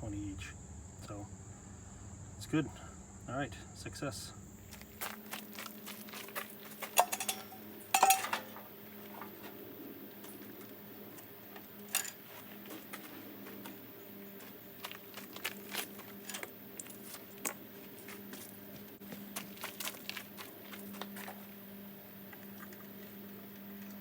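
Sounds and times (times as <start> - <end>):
faint steady hum: 0.0 - 24.0
small metal objects clinking: 5.9 - 8.7, 11.8 - 12.4, 15.4 - 17.1.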